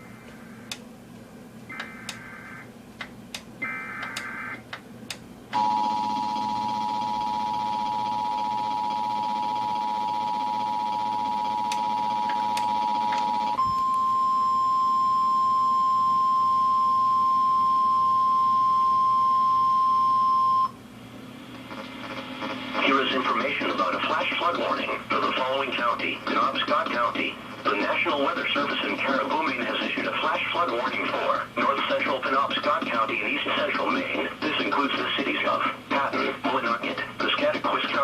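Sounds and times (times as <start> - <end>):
clicks: 0.3 - 0.9, 1.7 - 2.2, 3.0 - 5.3
steady warning alarm tone: 1.7 - 2.7, 3.6 - 4.6, 5.5 - 20.8
two-tone attention signal: 5.6 - 20.7.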